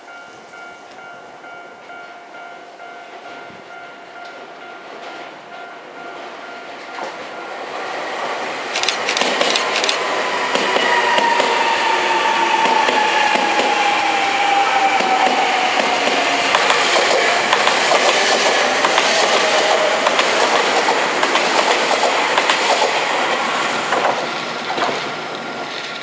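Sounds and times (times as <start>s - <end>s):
electric train passing: 0.0s - 26.0s
train motor whine: 7.4s - 26.0s
wheel clacks over rail joints: 15.0s - 23.0s.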